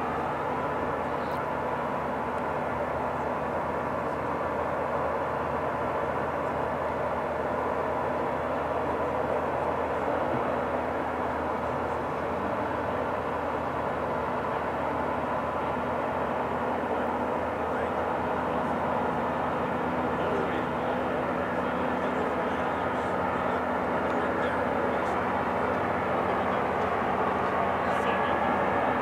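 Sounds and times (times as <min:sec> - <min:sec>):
diesel machinery droning: 0:00.0 - 0:29.0.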